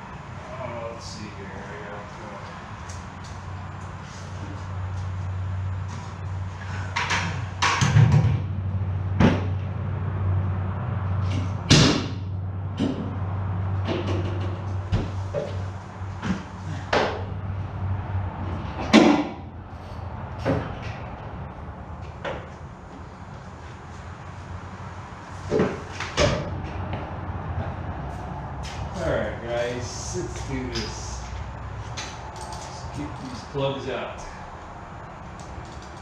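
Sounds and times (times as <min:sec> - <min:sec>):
hand tools and metal parts clinking: 0:30.3 - 0:33.5.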